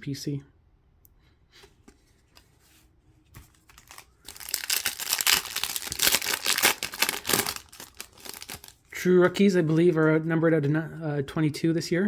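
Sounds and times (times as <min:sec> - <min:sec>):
foil wrapper tearing: 0:03.7 - 0:08.8.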